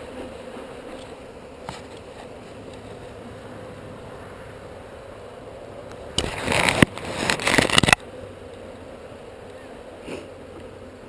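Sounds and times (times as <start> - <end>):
bees humming: 0.0 - 11.0
rough rushes of handling noise: 6.2 - 8.0.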